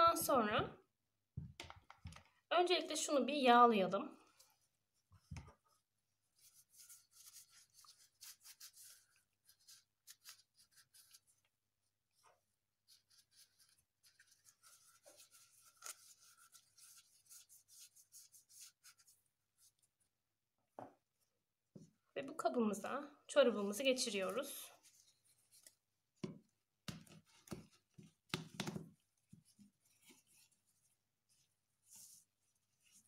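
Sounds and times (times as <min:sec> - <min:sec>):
hands rubbing oil: 0:12.8 - 0:19.9.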